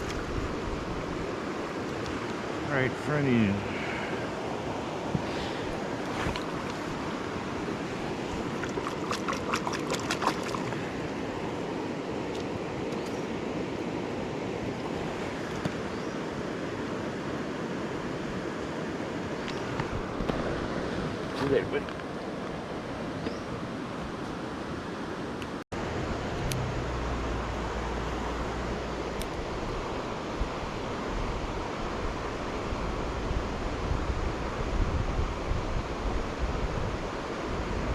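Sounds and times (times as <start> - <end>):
river water rushing: 0.0 - 37.9
sharp clicks or splashes: 6.0 - 6.8, 8.5 - 10.8.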